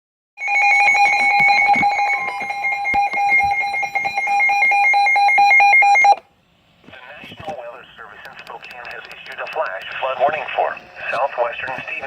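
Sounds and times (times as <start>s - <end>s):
steady electronic alert tone: 0.4s - 6.2s
rapid regular ticking: 8.2s - 10.1s.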